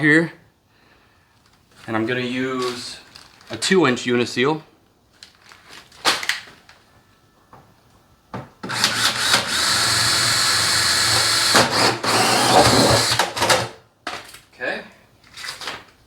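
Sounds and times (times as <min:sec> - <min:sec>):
power drill cutting plastic: 0:08.6 - 0:13.8.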